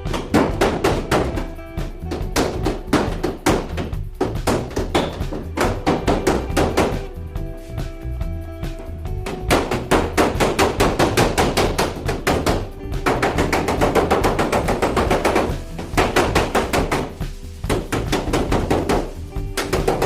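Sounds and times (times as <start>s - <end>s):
background music: 0.0s - 20.0s
rapid sharp knocking: 9.3s - 20.0s.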